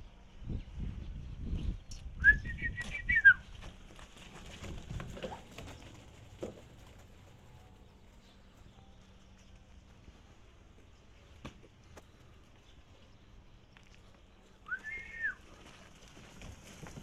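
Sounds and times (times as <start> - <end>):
ostrich chick whistled call: 2.2 - 3.4, 14.6 - 15.4.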